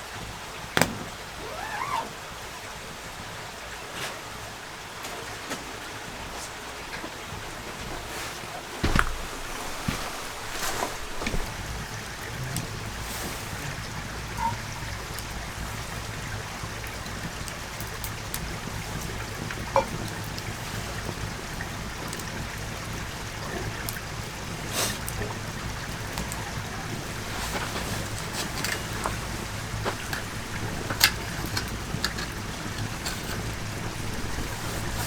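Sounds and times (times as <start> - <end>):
campfire hissing: 0.0 - 35.0
fire crackles and pops: 0.1 - 2.0, 8.8 - 35.0.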